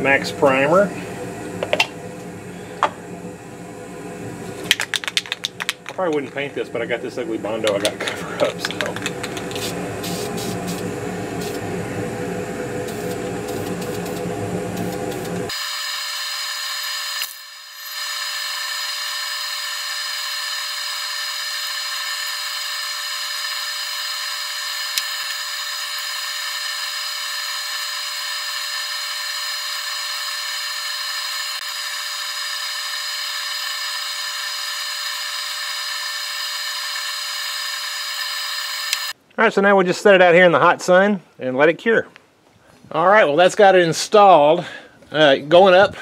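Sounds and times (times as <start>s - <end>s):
aerosol spray can hissing: 8.5s - 11.6s, 12.8s - 39.2s.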